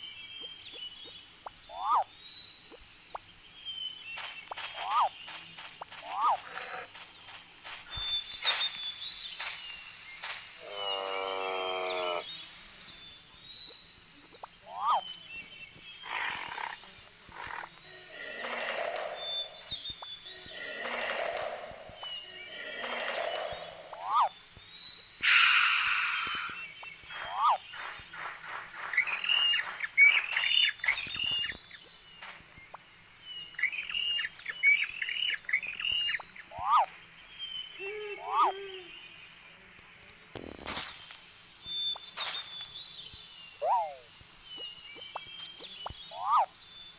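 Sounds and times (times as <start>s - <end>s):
birds chirping: 0.0s - 39.7s, 40.8s - 46.9s
animal call: 1.7s - 2.1s, 6.0s - 7.0s, 10.6s - 12.3s, 16.0s - 24.4s, 25.2s - 27.6s, 36.5s - 37.0s, 37.8s - 38.9s, 43.6s - 44.1s, 46.1s - 46.5s
birds squawking: 6.0s - 7.0s, 16.0s - 24.4s, 33.6s - 36.9s, 46.1s - 46.5s
low bird call: 25.2s - 28.0s, 43.6s - 44.1s.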